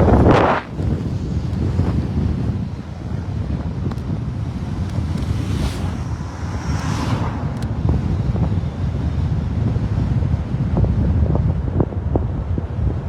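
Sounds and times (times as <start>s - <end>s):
vehicle passing: 0.0s - 9.8s
wind buffeting microphone: 0.0s - 13.0s.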